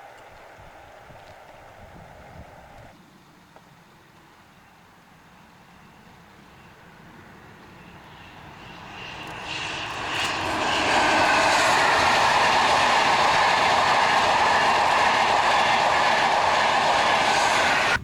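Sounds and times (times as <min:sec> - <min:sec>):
faint whine: 0:04.4 - 0:18.0
train passing with rumble: 0:05.2 - 0:18.0.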